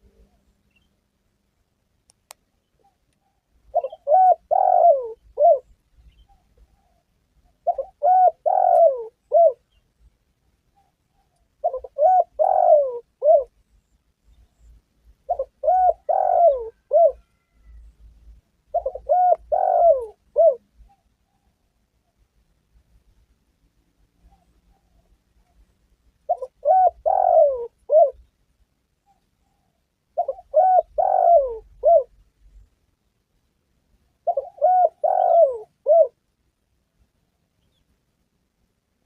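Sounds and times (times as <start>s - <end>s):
dove cooing: 2.7s - 9.8s, 10.7s - 13.6s, 14.6s - 17.9s, 18.7s - 21.6s, 26.2s - 28.3s, 29.0s - 32.2s, 34.2s - 36.2s.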